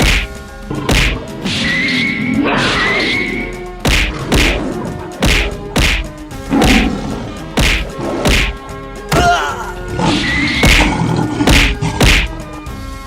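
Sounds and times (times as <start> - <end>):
heavy whacks and thuds: 0.0 - 9.3, 10.0 - 12.4
background music: 0.0 - 13.0.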